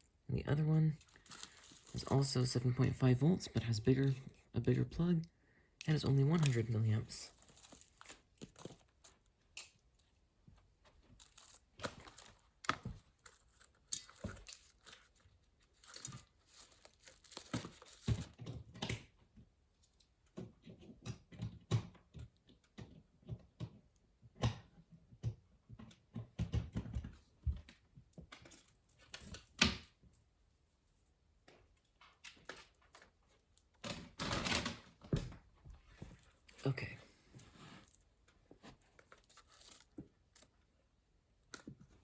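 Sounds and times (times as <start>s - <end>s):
plastic packaging rustling and tearing: 0.9s - 4.5s, 5.9s - 10.1s, 10.9s - 18.4s, 36.0s - 40.7s.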